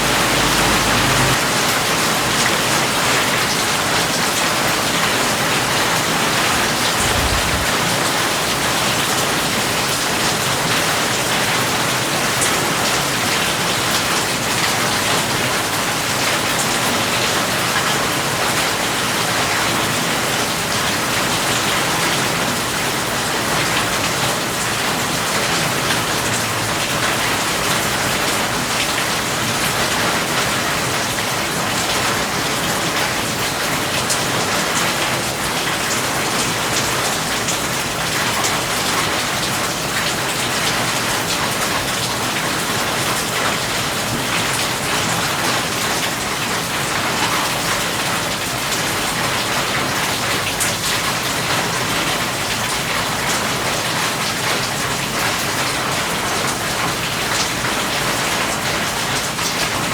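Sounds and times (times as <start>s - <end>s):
steady rain hiss: 0.0s - 1.6s.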